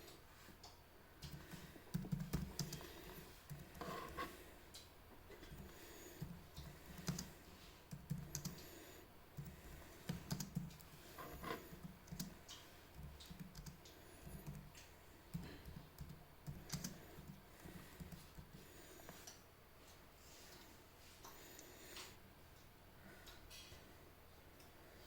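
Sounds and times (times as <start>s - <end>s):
laptop keyboard typing: 1.2s - 4.4s, 5.4s - 8.8s, 9.4s - 19.3s.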